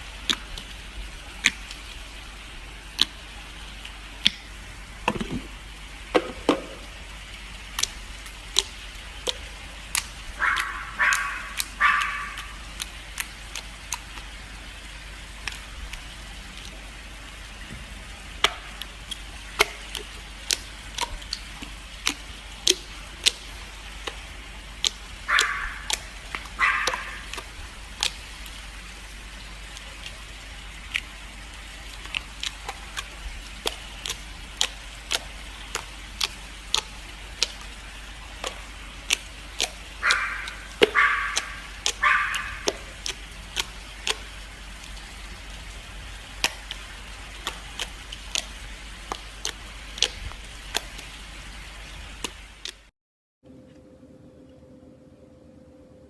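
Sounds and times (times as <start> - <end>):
slime squelching: 0.0 - 5.6, 6.2 - 14.6, 18.4 - 52.9
slime clicking and popping: 4.2 - 4.4, 7.8 - 8.0, 18.4 - 24.2, 24.8 - 27.4, 32.0 - 37.7, 38.4 - 44.3, 46.4 - 46.8, 47.4 - 48.5, 49.1 - 51.1.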